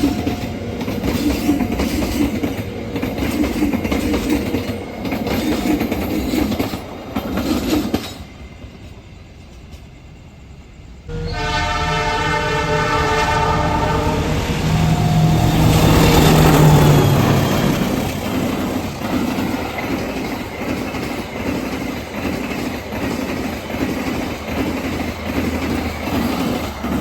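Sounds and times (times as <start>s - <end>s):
train wheels clattering on rails: 0.0s - 10.1s, 14.1s - 27.0s
locomotive horn: 11.1s - 17.6s.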